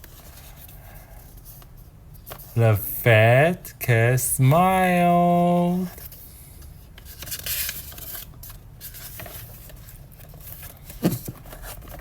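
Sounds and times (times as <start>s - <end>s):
short voice sound: 2.6s - 6.0s
book page rustling and turning: 5.8s - 12.0s.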